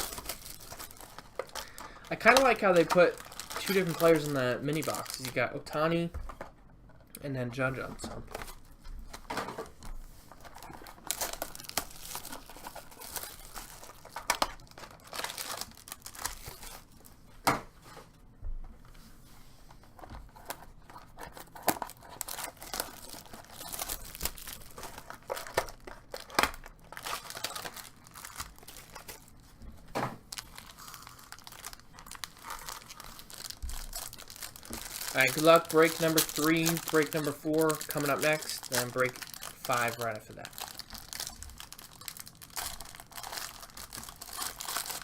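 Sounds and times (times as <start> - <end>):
packaging crinkling and tearing: 0.0 - 6.0, 10.3 - 17.2, 19.9 - 29.4, 30.2 - 45.0.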